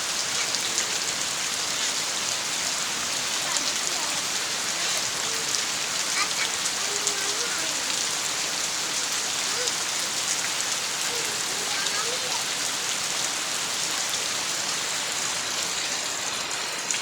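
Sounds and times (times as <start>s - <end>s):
heavy rain falling: 0.0s - 17.0s
faint voices: 2.9s - 13.0s.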